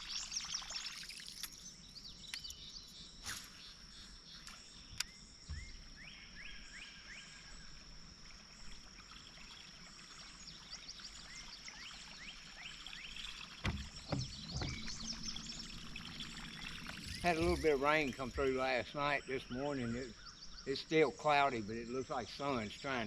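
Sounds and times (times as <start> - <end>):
small birds chirping: 0.0 - 7.8, 8.5 - 23.0
high insect drone: 12.9 - 23.0
dull knocks: 13.6 - 16.3.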